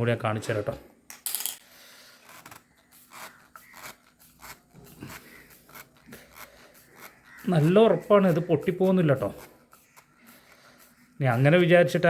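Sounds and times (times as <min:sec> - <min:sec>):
plastic pipe fittings scraping: 0:02.0 - 0:12.0.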